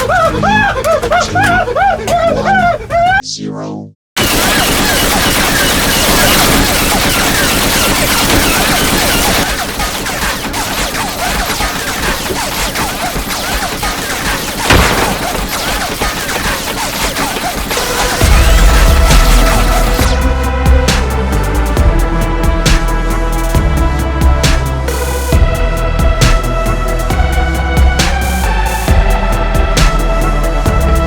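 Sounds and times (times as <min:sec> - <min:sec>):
rapid gunfire: 0:04.2 - 0:21.5
loud blast: 0:14.6 - 0:16.1, 0:17.8 - 0:21.2.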